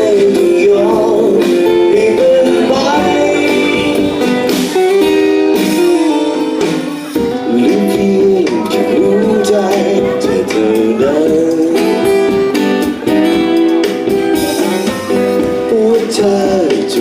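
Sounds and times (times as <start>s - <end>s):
drums and cymbals: 0.0s - 17.0s
guitar melody: 0.0s - 17.0s
live band playing pop ballad: 0.0s - 17.0s.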